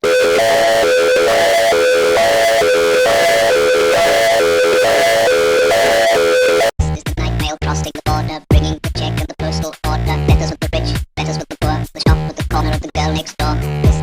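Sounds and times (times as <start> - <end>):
distorted two-pitch alarm tone: 0.0 - 6.7.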